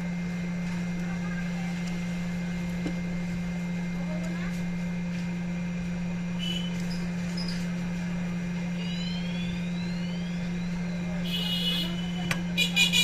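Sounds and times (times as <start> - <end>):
steady low hum: 0.0 - 13.0
faint rising whistles: 8.8 - 11.2.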